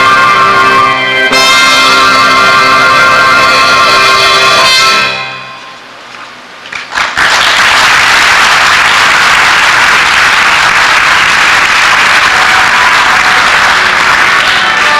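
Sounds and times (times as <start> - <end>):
musical accompaniment chord: 0.0 - 5.8
audience applauding: 6.7 - 14.9.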